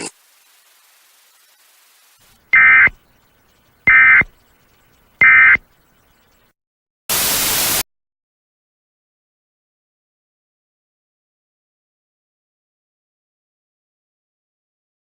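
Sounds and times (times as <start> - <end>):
static hiss: 0.0 - 5.6, 7.1 - 7.8
short data burst tones: 0.0 - 6.5, 7.1 - 7.8.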